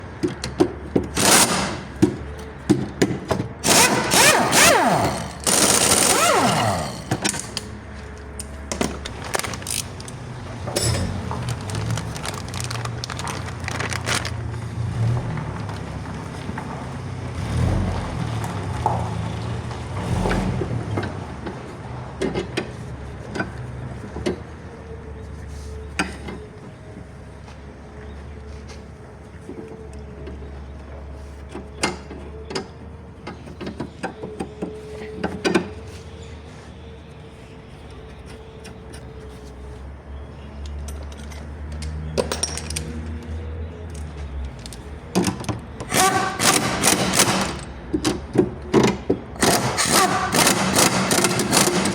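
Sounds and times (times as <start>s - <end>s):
metal tools clicking and clanking: 8.4s - 14.3s, 40.6s - 43.3s
metal scraping and rattling: 8.7s - 17.0s.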